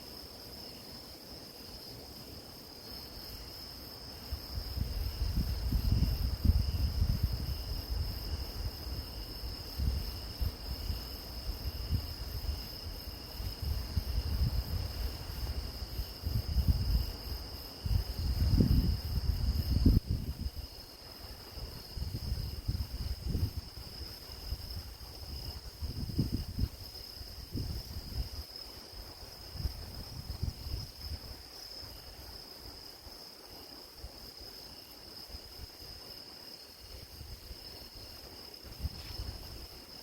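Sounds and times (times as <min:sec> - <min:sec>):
crickets chirring: 0:00.0 - 0:40.0
wind buffeting microphone: 0:04.2 - 0:31.5, 0:37.1 - 0:39.8.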